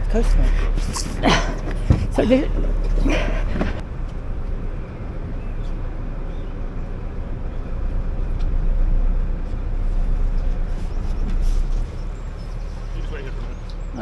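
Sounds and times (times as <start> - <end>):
engine rumbling: 0.0 - 14.0.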